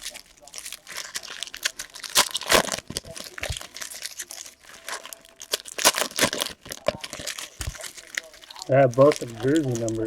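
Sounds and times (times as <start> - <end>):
plastic wrappers crinkling and tearing: 0.0 - 10.0.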